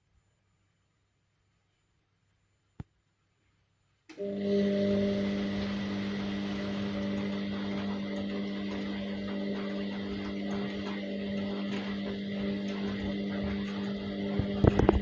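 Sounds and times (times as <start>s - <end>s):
washing machine motor hum: 4.1s - 15.0s.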